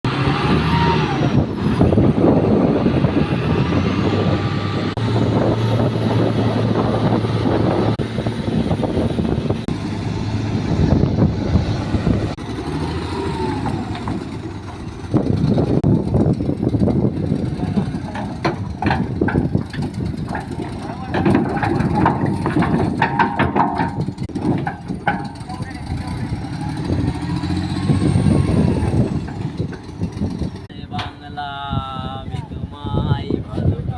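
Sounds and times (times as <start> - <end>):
excavator diesel engine: 0.0 - 31.8
machine clattering: 13.6 - 26.5.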